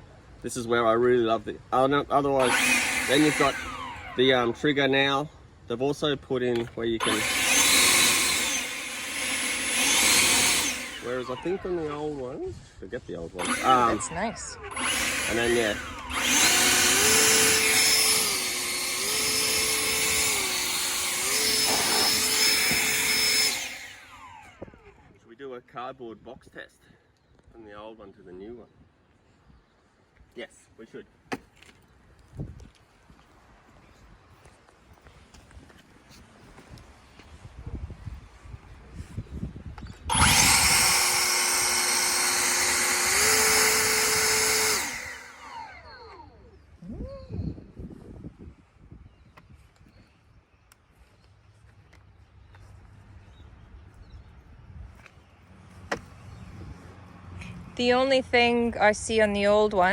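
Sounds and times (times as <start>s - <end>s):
leaf blower whining: 2.4s - 5.1s, 7.0s - 12.5s, 13.3s - 25.2s, 40.1s - 47.0s.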